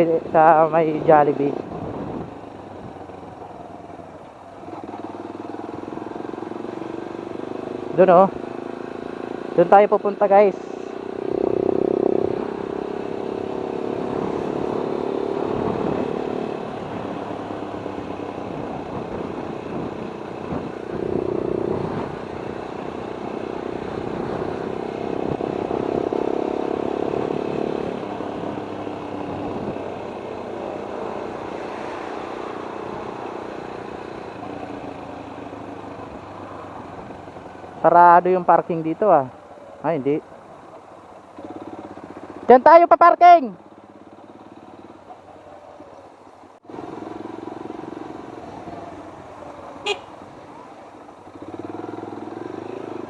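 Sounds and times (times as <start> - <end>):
motorcycle engine revving: 0.0 - 53.0
wind noise: 1.0 - 3.4, 15.4 - 17.4, 18.4 - 22.9, 29.2 - 30.0.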